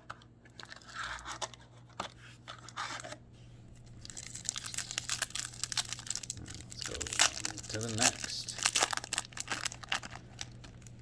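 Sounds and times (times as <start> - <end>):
paper wrapper crinkling: 3.8 - 11.0.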